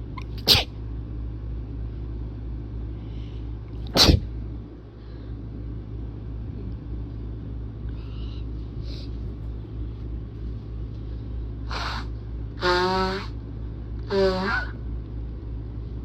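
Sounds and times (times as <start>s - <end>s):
low background rumble: 0.0s - 16.0s
sneeze: 0.3s - 0.8s, 3.9s - 4.3s
faint breaths: 7.9s - 9.4s.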